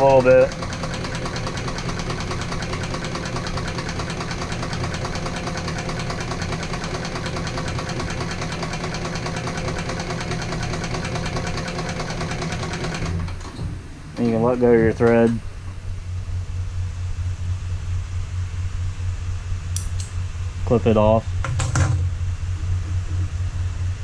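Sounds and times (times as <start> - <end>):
sewing machine clatter: 0.0 - 13.7
motor hum: 0.0 - 24.0.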